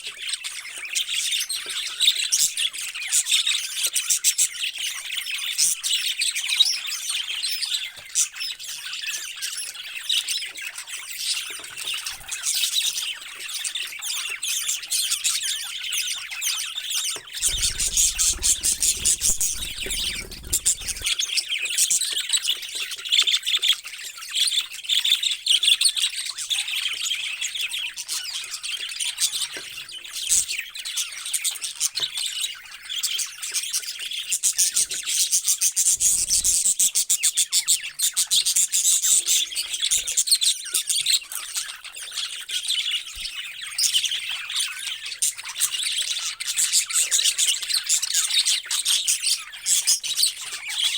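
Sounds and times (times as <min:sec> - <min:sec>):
parrots chattering and squawking: 0:17.2 - 0:21.8.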